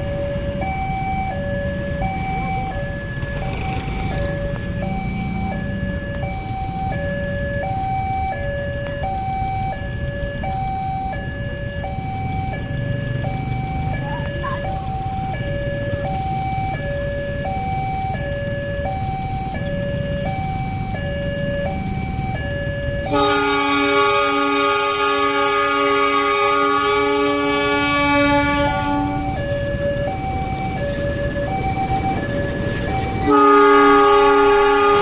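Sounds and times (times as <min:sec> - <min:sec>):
two-tone electronic warning signal: 0:00.0 - 0:35.0
locomotive horn blowing: 0:23.1 - 0:29.3, 0:33.2 - 0:35.0.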